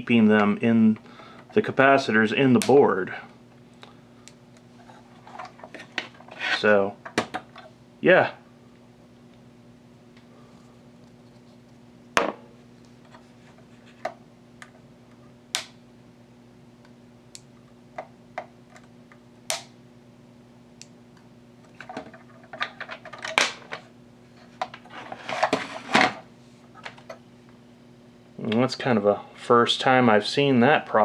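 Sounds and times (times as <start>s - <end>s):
faint steady hum: 0.0s - 31.0s.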